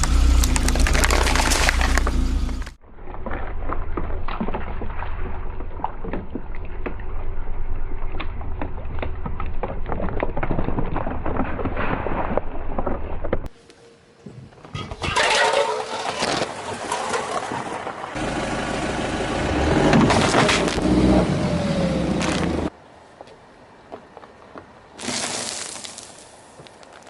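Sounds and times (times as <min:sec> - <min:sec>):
tyre crushing brittle crackling: 0:00.0 - 0:02.3, 0:25.0 - 0:27.0
low engine rumble: 0:00.0 - 0:02.8, 0:18.1 - 0:22.7.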